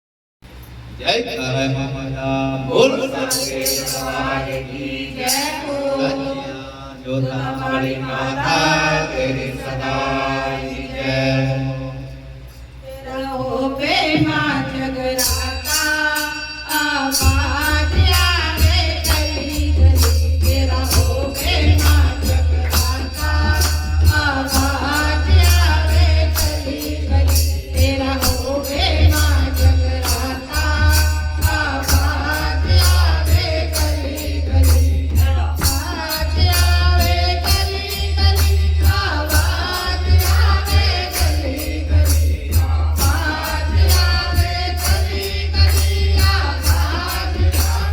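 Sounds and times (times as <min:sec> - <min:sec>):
voices singing: 0:02.2 - 0:47.9
steady percussion beat: 0:03.2 - 0:05.7, 0:13.9 - 0:47.9.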